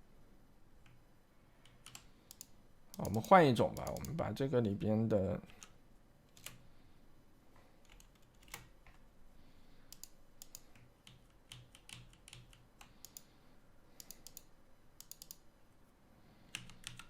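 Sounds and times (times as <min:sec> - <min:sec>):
typing on computer keyboard: 0:01.6 - 0:04.2, 0:07.8 - 0:09.0, 0:09.9 - 0:13.3, 0:14.0 - 0:15.4, 0:16.5 - 0:17.0.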